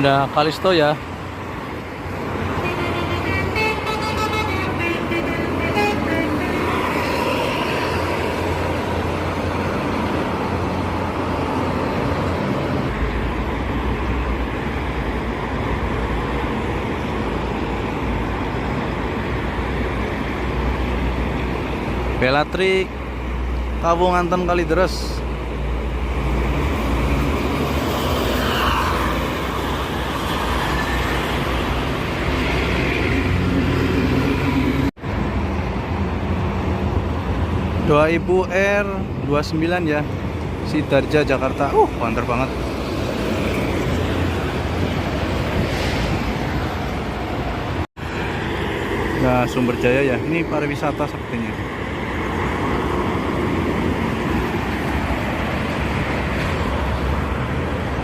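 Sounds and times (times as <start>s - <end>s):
heavy vehicle rumble: 0.0s - 23.9s, 24.6s - 58.0s
rush of traffic engines and tyres: 0.0s - 58.0s
multi-tone bus horn: 2.5s - 7.2s.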